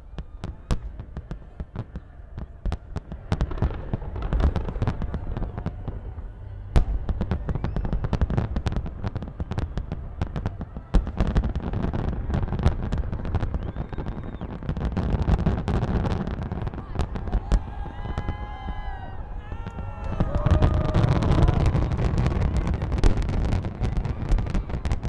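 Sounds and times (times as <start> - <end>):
continuous low rumble: 0.0 - 11.0
fireworks bangs and crackles: 0.0 - 25.0
loud firework reports: 0.0 - 25.0.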